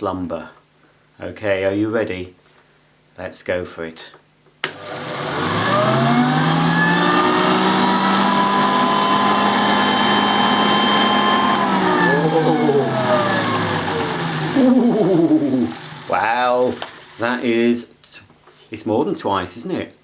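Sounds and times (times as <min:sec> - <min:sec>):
upright vacuum cleaner whining: 0:04.6 - 0:17.8.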